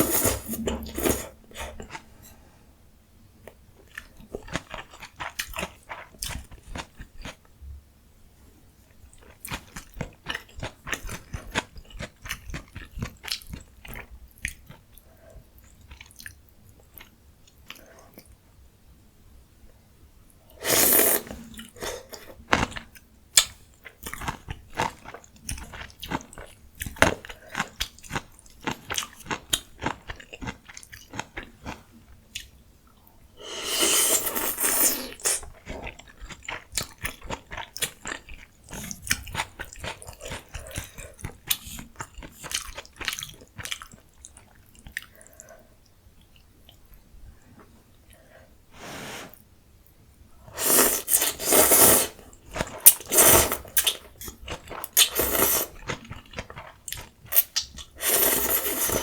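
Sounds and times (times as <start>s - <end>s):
slurping noodles: 0.0s - 1.8s, 20.6s - 22.2s, 33.4s - 35.4s, 50.5s - 52.2s, 52.8s - 54.0s, 55.0s - 55.8s, 58.0s - 59.0s
chewing with crunchy bites: 9.1s - 18.4s, 21.3s - 33.2s, 34.0s - 48.3s, 50.5s - 59.0s.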